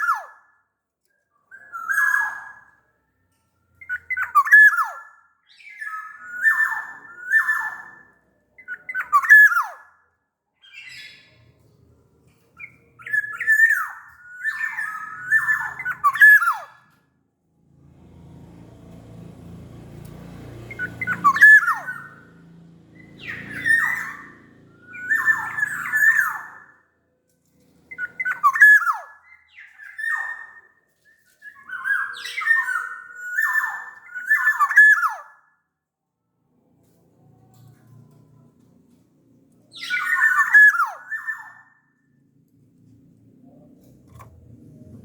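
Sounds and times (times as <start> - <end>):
oriole singing fluty whistles: 13.0 - 16.9, 20.7 - 22.2, 23.0 - 26.8, 27.9 - 35.4.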